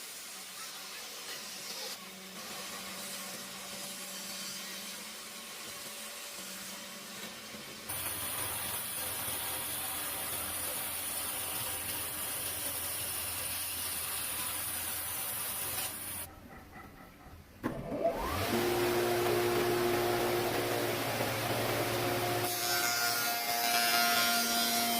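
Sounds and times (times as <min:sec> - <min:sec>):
machine hum with hiss: 0:01.8 - 0:16.3, 0:18.1 - 0:23.5
power tool motor whining: 0:17.8 - 0:22.6.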